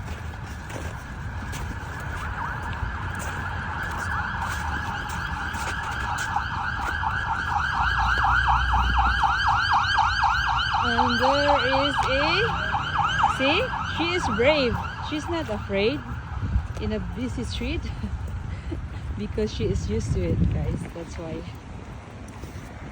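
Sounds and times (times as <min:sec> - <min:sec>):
street traffic rumble: 0:00.0 - 0:22.9
siren yelping: 0:02.0 - 0:18.3.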